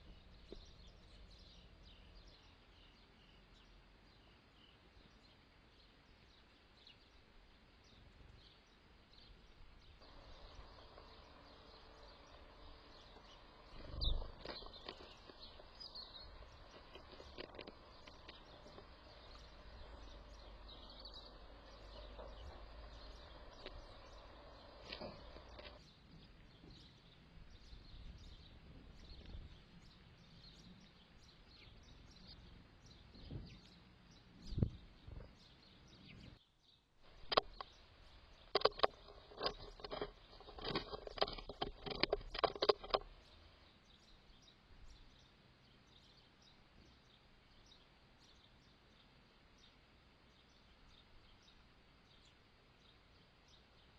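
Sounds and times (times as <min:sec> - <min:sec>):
garden background noise: 0:00.0 - 0:53.9
faint bird calls: 0:09.2 - 0:33.8.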